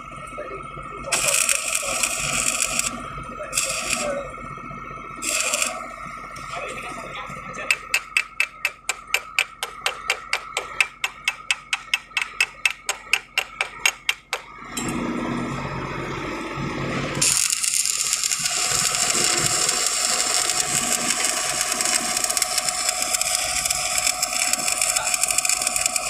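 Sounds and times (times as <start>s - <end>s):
steady whine: 0.0s - 26.0s
welding hiss: 1.2s - 3.0s, 3.6s - 4.2s, 5.2s - 5.8s, 17.2s - 26.0s
metal tapping: 7.6s - 14.5s.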